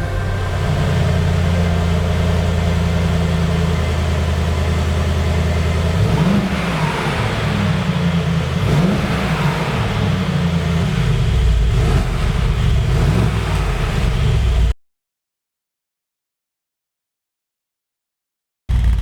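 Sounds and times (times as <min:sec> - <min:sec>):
car engine revving: 0:00.0 - 0:14.7.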